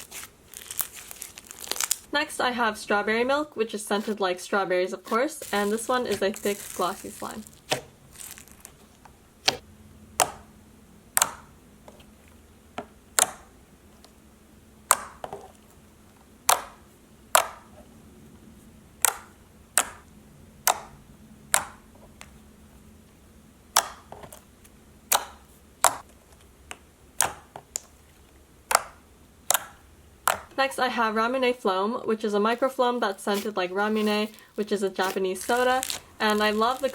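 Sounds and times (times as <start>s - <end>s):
slime popping while kneaded by hand: 35.0s - 36.9s.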